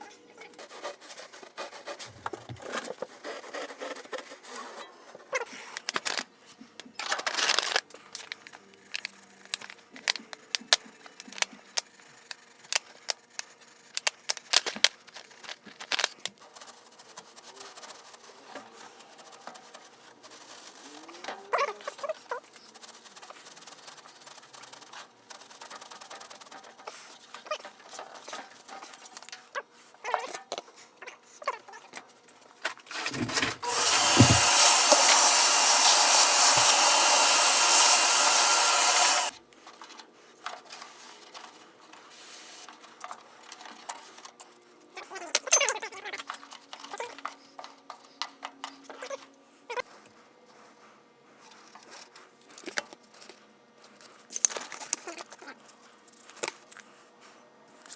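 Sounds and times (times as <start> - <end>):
scrapes and knocks of handling: 32.6 - 35.2
power tool running: 33.1 - 39.4.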